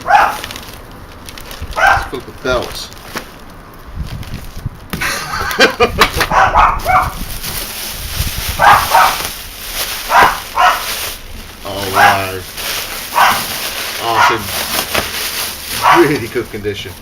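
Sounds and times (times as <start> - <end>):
dog barking: 0.0 - 0.5, 1.8 - 2.1, 6.3 - 7.2, 8.6 - 9.2, 10.1 - 11.0, 11.9 - 12.3, 13.1 - 14.5, 15.8 - 16.2
clattering and rustling handling noise: 0.0 - 17.0.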